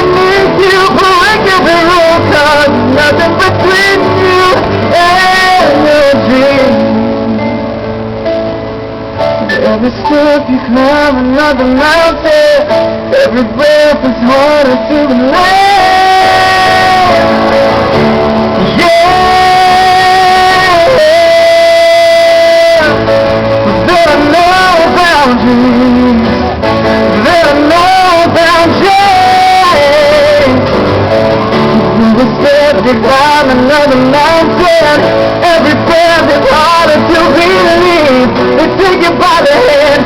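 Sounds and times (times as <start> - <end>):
man singing wordless vocal runs: 0.0 - 7.3, 9.5 - 26.4, 27.0 - 40.0
band playing pop-rock ballad: 0.0 - 40.0
guitar: 0.0 - 40.0.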